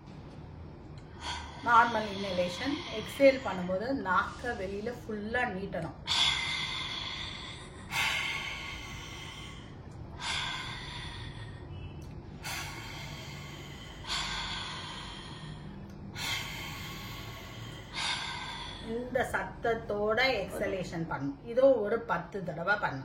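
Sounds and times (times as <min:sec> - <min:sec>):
woman breathing in: 0:01.0 - 0:05.2, 0:06.0 - 0:19.3.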